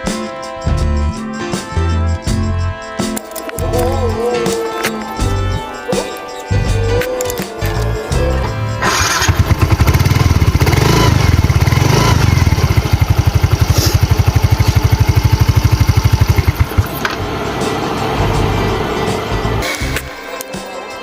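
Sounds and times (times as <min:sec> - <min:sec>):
background music: 0:00.0 - 0:21.0
motorcycle engine starting and idling: 0:08.8 - 0:19.6.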